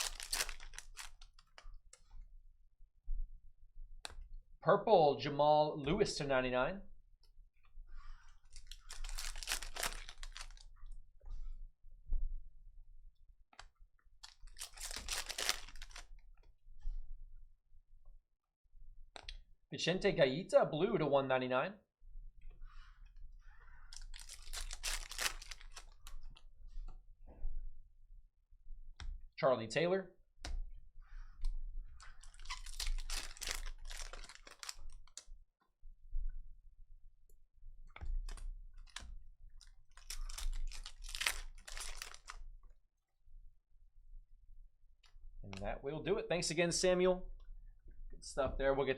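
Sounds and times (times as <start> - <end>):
card wrappers crinkling: 0.0 - 1.7, 8.5 - 10.7, 14.2 - 16.1, 23.9 - 26.4, 32.2 - 35.2, 38.0 - 42.4.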